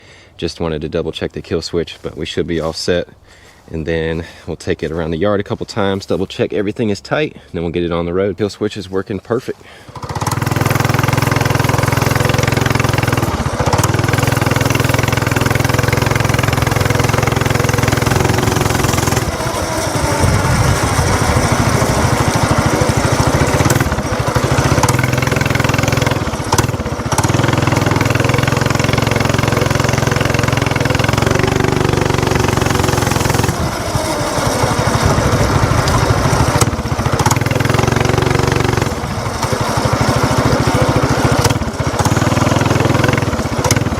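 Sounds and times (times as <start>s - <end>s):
mini bike engine running: 9.7s - 43.9s.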